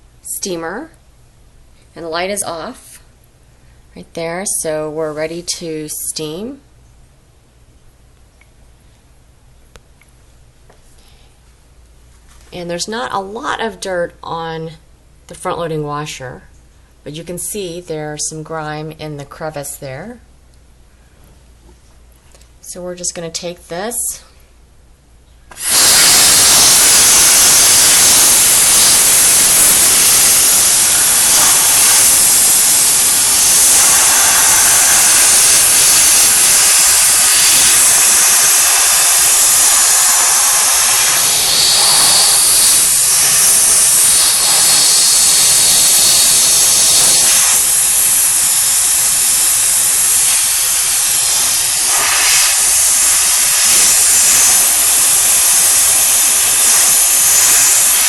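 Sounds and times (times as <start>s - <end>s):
steam cleaner hissing: 25.5s - 58.0s.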